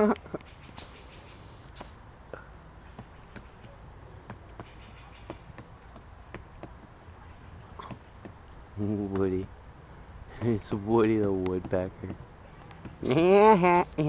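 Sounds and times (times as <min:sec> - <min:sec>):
woodpecker tapping on tree: 0:02.8 - 0:09.4.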